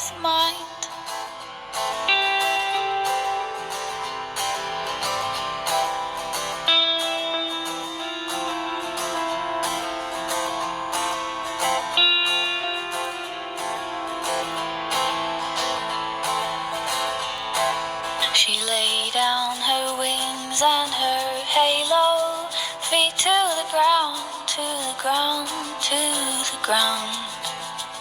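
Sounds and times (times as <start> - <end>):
held melody notes: 0.0 - 18.4
strummed guitar: 0.0 - 28.0.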